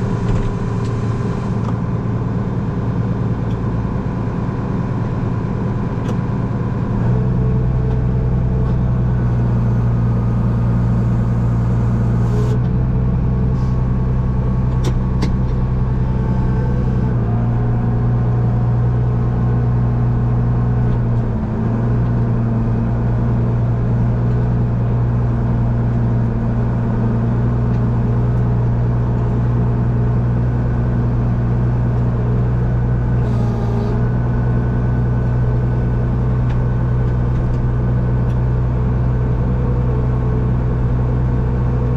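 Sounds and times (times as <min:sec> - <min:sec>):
tractor engine droning: 0:00.0 - 0:41.9.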